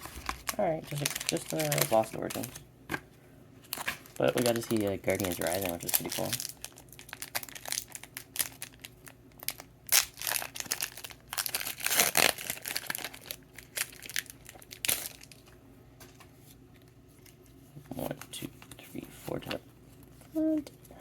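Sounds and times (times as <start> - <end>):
foil wrapper tearing and crinkling: 0.0 - 2.6, 3.6 - 15.5.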